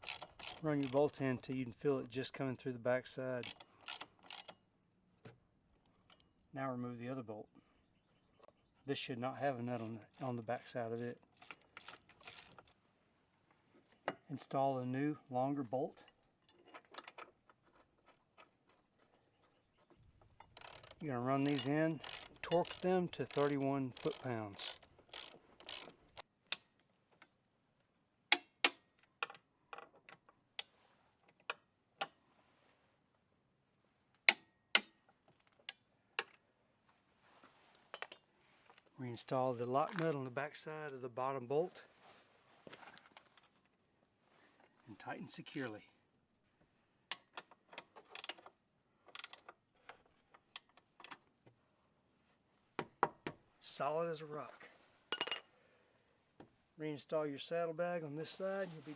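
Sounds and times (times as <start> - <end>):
socket ratchet clicking: 0.0 - 1.0, 3.4 - 4.6, 20.5 - 26.2.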